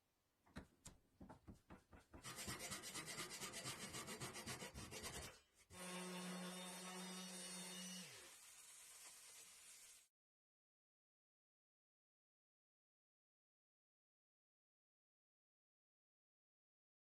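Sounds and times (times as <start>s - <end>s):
hand scraping wood: 1.4s - 5.7s
small power tool humming: 5.8s - 10.0s.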